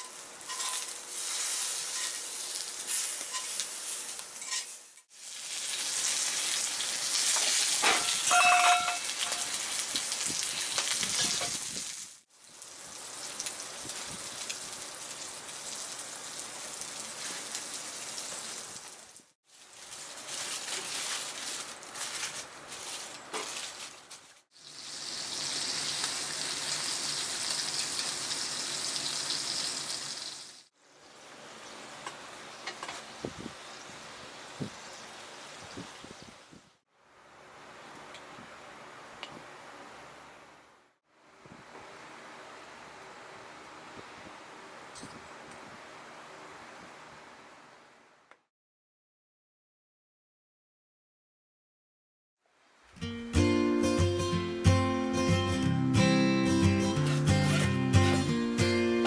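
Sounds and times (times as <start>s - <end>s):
steak sizzling in a pan: 0.4s - 19.0s, 24.6s - 30.7s
short ringing tone: 8.2s - 9.5s.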